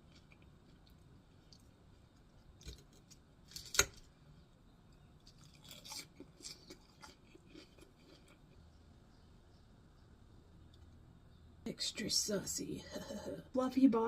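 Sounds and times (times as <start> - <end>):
chewing ribs: 0.0 - 3.8, 4.9 - 8.9.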